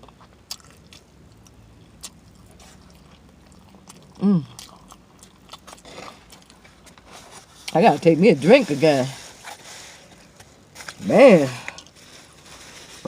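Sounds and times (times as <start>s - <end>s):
person chewing food: 0.0s - 7.8s, 11.6s - 13.0s.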